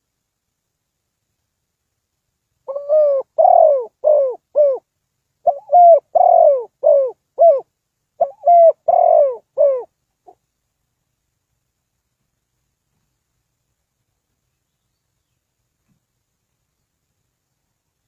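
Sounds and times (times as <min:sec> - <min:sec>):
dove cooing: 0:02.7 - 0:04.8, 0:05.4 - 0:10.4.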